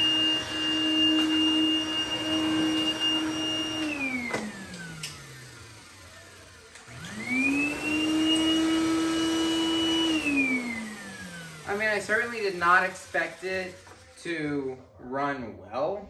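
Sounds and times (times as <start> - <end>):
vacuum motor whine: 0.0 - 14.2.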